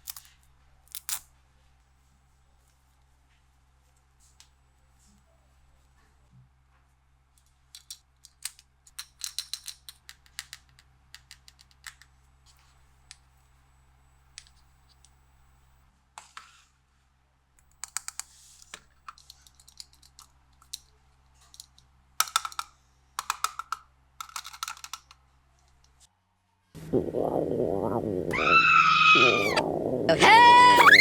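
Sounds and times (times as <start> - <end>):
toy pieces clicking and tapping: 7.7 - 12.1, 21.6 - 25.2.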